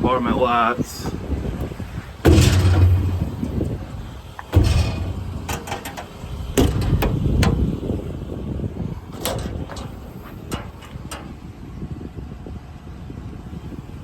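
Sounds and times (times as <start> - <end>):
metal doors thudding shut: 1.6 - 11.5
door latch clicks: 4.4 - 7.9, 9.1 - 11.4.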